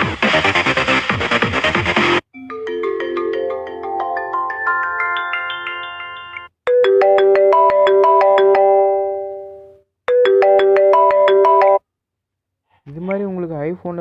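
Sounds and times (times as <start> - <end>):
ringtone of quick repeated notes: 2.3 - 11.8.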